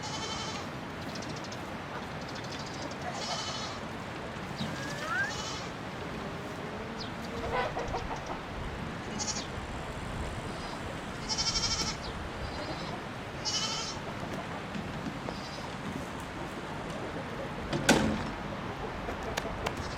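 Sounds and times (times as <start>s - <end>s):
farm animals crying: 0.0s - 0.7s, 2.6s - 9.6s, 10.4s - 14.3s, 15.3s - 15.8s
background noise: 0.0s - 19.9s.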